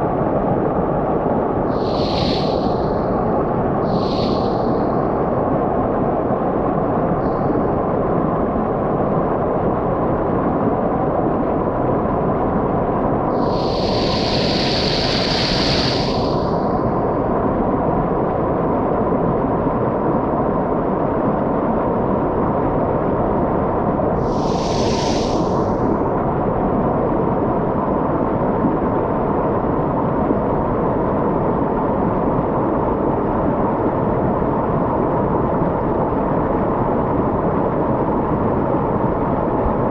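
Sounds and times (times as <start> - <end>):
high hiss: 1.7 - 5.1, 13.3 - 16.8, 24.2 - 26.0.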